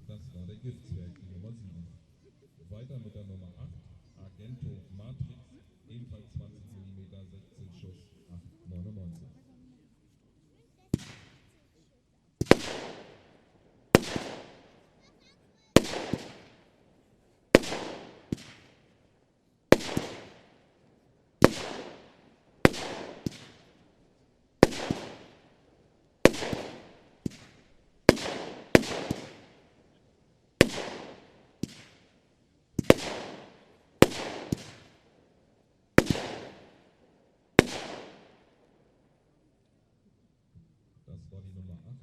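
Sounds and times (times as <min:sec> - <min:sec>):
firework battery bangs: 0:14.0 - 0:14.8, 0:15.8 - 0:16.7, 0:17.6 - 0:19.0, 0:19.7 - 0:20.6, 0:21.4 - 0:23.8, 0:24.6 - 0:25.5, 0:26.2 - 0:29.7, 0:30.6 - 0:32.1, 0:32.8 - 0:35.0.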